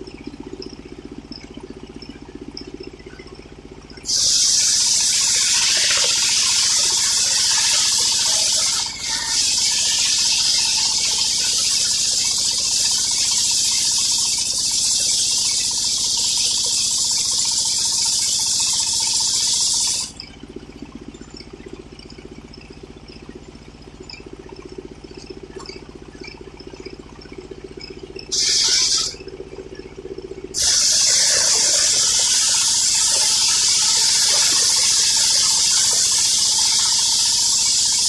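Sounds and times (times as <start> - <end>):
circular saw cutting log: 4.1 - 20.1, 28.3 - 29.2, 30.6 - 38.0.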